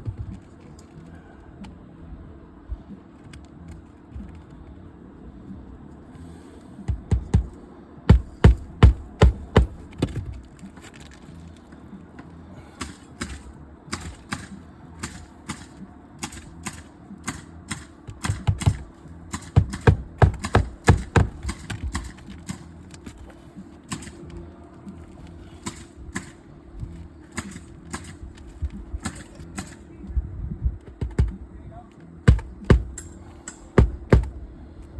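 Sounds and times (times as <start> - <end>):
steady low hum: 0.0 - 34.9
sharp clicks and taps on shingle: 6.9 - 11.8, 12.8 - 29.8, 30.8 - 31.4, 32.0 - 34.4.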